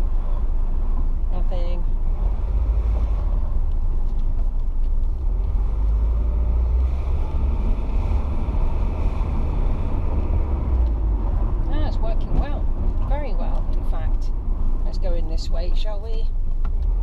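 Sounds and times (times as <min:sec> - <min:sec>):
diesel engine rumble inside car: 0:00.0 - 0:17.0
road noise: 0:00.0 - 0:17.0.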